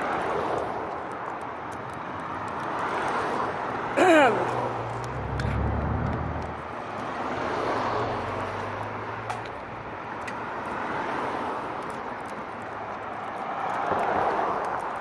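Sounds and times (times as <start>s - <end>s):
steady traffic hum: 0.0s - 15.0s
vehicle passing: 2.3s - 9.9s.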